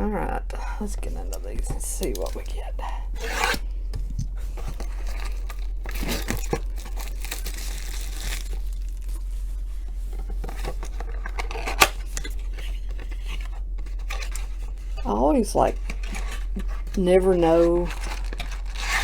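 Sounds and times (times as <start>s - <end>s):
packaging tearing and crinkling: 2.0s - 3.6s, 4.4s - 9.3s, 15.9s - 19.0s.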